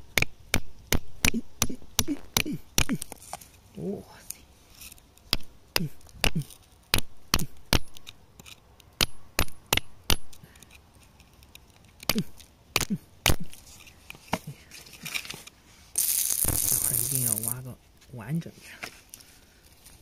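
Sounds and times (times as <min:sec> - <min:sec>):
hand tool striking rock: 0:00.1 - 0:03.1, 0:05.3 - 0:08.1, 0:09.0 - 0:10.4, 0:12.0 - 0:13.6.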